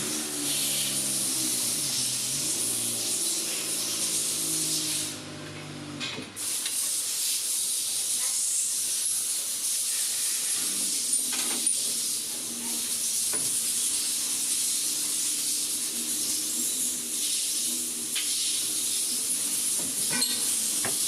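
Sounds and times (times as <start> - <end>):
steady hiss: 6.4 - 21.0.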